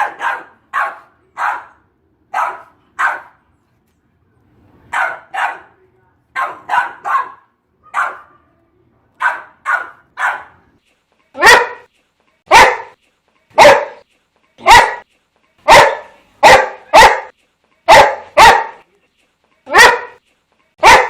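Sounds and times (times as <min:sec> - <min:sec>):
dog barking: 0:00.0 - 0:03.4, 0:04.9 - 0:05.7, 0:06.4 - 0:08.5, 0:09.2 - 0:10.6, 0:11.4 - 0:11.9, 0:12.5 - 0:13.0, 0:13.6 - 0:14.0, 0:14.6 - 0:15.0, 0:15.6 - 0:17.3, 0:17.9 - 0:18.8, 0:19.7 - 0:20.2, 0:20.8 - 0:21.0.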